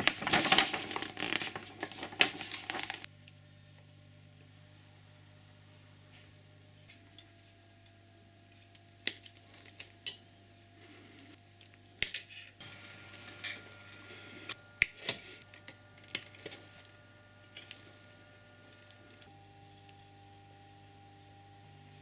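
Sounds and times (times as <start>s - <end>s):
metal tools clicking and clinking: 12.0s - 12.5s.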